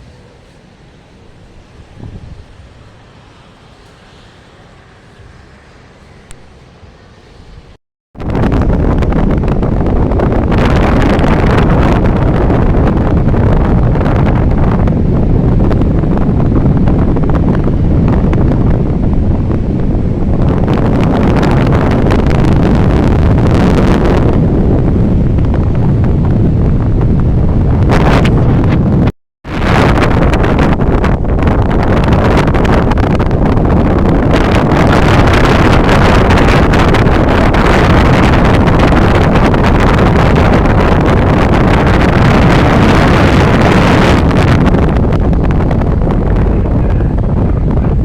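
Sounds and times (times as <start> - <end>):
wind buffeting the microphone: 0.0 - 48.0.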